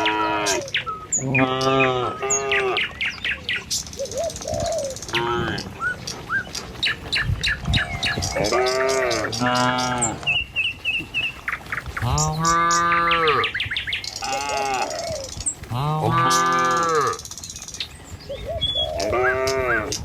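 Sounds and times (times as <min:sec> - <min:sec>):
songbirds chirping: 0:00.0 - 0:20.0
cattle mooing: 0:08.0 - 0:10.4, 0:15.7 - 0:17.2, 0:19.0 - 0:20.0.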